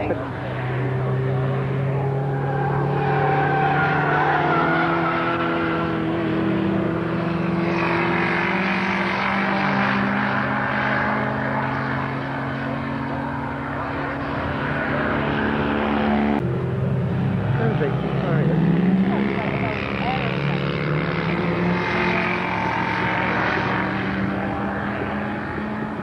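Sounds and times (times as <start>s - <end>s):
race car engines running hard: 0.0s - 26.0s.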